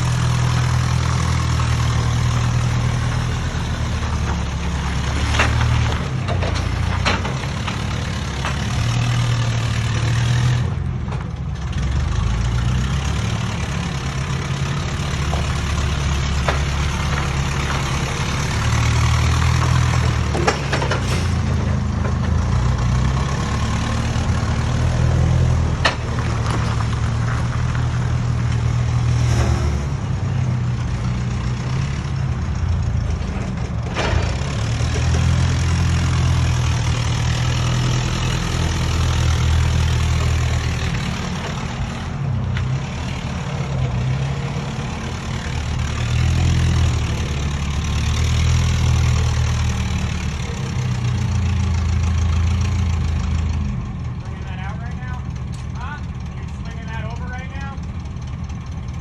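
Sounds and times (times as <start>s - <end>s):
heavy engine running: 0.0s - 59.0s.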